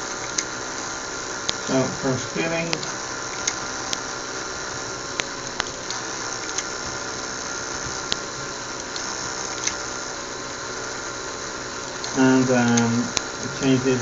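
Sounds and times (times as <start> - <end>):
sharp clicks: 0.0 - 1.8, 2.6 - 4.1, 5.1 - 7.0, 7.7 - 9.9, 11.8 - 13.7
small electric motors whirring: 0.0 - 14.0.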